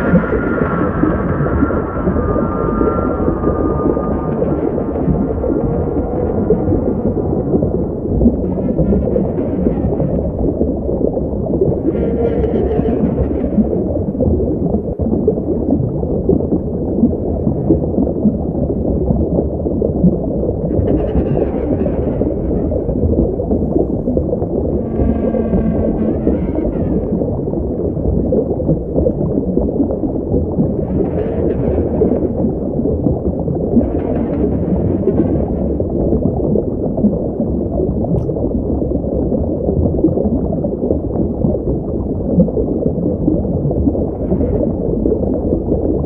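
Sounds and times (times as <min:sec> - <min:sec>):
whale-like calls: 0:00.0 - 0:10.5, 0:11.8 - 0:13.9, 0:20.7 - 0:28.4
bubbling underwater rumble: 0:00.0 - 0:46.0.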